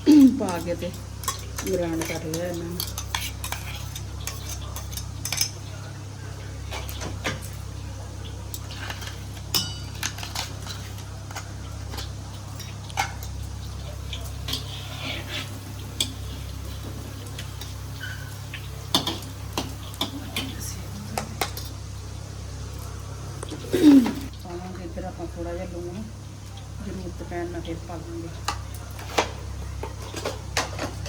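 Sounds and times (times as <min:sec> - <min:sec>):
metal utensils clinking on dishes: 0:00.0 - 0:05.8, 0:08.5 - 0:21.7, 0:28.4 - 0:31.0.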